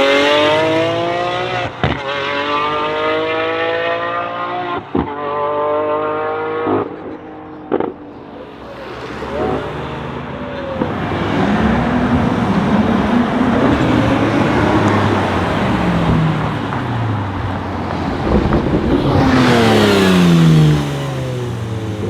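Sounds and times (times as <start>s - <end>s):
car engine accelerating past: 8.5s - 22.0s.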